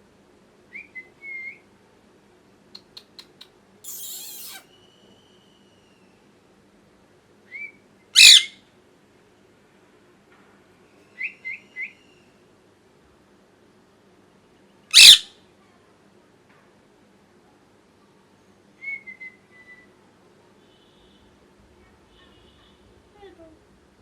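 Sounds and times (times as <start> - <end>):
parrot chirping and screaming: 3.2 - 4.8, 8.2 - 8.6, 14.9 - 15.3.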